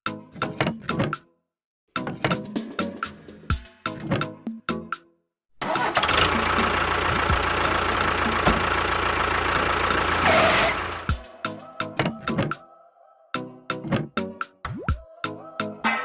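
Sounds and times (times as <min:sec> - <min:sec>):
engine starting and running: 0:05.6 - 0:11.3.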